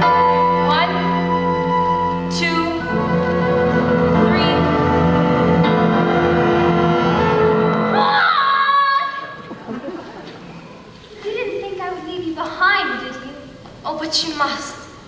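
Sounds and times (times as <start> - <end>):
stage musical instrumental accompaniment: 0.0 - 11.1.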